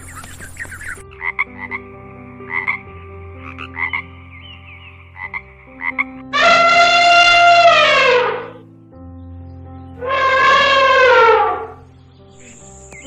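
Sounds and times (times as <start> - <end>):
drawn-out pitched call: 0.0 - 8.6, 10.0 - 11.8
frog croaking: 0.0 - 8.8, 10.0 - 13.0.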